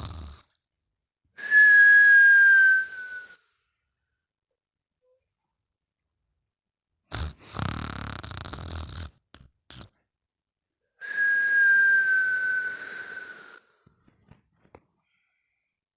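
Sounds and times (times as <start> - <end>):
person snoring: 0.0 - 0.6, 7.1 - 9.9, 12.6 - 13.7
whistling breath: 1.4 - 3.8, 11.0 - 14.0, 15.0 - 15.8.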